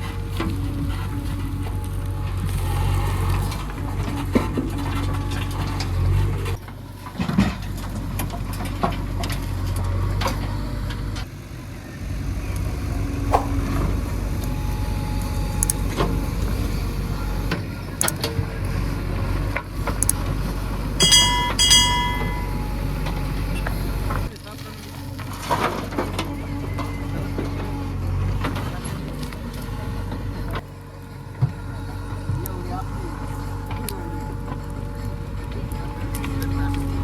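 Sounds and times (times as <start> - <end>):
metal knocks and clanks: 21.0 - 22.6.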